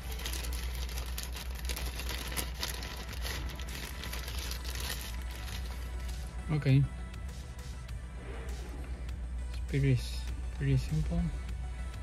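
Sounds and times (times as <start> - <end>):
plastic crinkling: 0.0 - 6.3.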